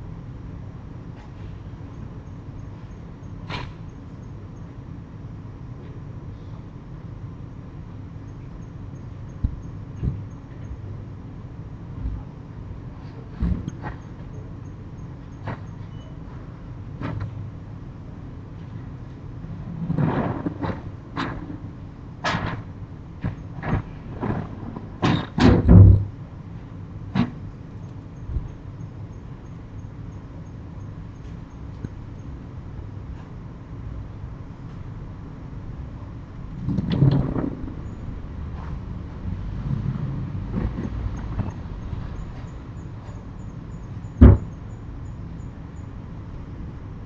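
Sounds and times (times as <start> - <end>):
low steady rumble: 0.0 - 47.0
sharp knocks and bangs: 44.2 - 44.6.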